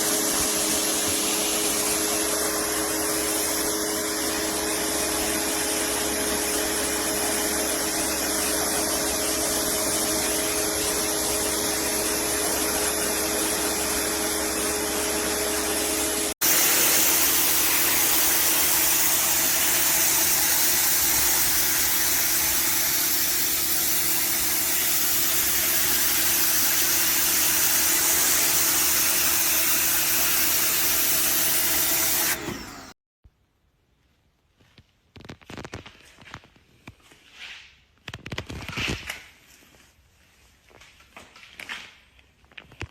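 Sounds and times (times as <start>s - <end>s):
water jet hissing on concrete: 0.0s - 32.4s
pressure washer motor hum: 0.0s - 33.0s.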